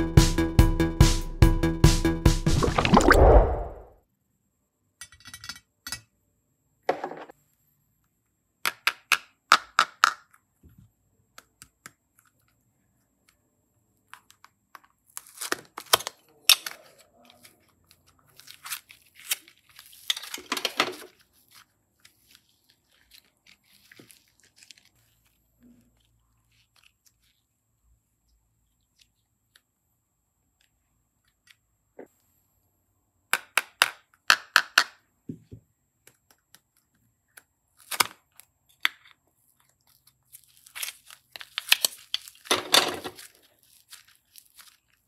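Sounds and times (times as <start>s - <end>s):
hands handling slime: 14.1s - 27.6s, 36.0s - 45.0s.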